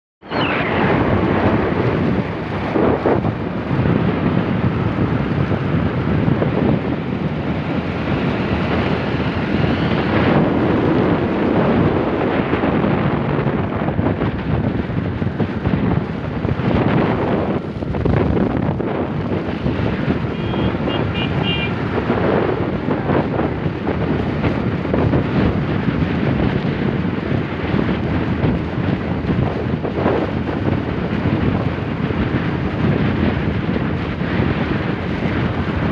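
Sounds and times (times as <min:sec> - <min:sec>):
rain: 0:00.2 - 0:35.9
road traffic: 0:00.2 - 0:35.9
wind buffeting microphone: 0:00.2 - 0:35.9.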